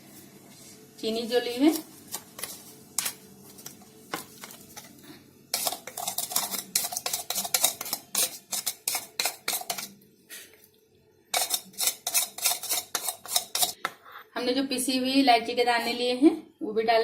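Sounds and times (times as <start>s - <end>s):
spoon clinking and scraping bowl: 1.8s - 10.0s, 11.3s - 13.8s.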